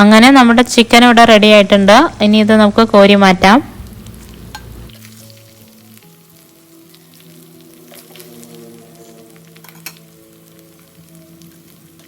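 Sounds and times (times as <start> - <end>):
chicken sizzling in oil: 3.8 - 12.0
utensil clicking against pan: 9.6 - 10.0.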